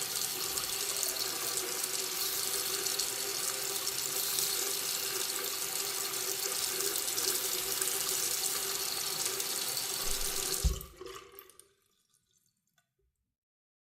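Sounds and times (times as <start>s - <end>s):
water trickling and dripping: 0.0s - 12.9s
tap running into a sink: 9.9s - 11.2s
tap shutting off thump: 10.1s - 10.9s.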